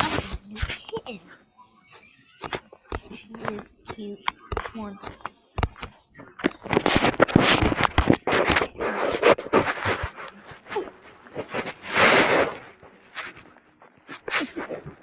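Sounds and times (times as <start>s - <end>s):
rustling against microphone: 1.8s - 15.0s
burst of rough noise: 11.4s - 12.7s.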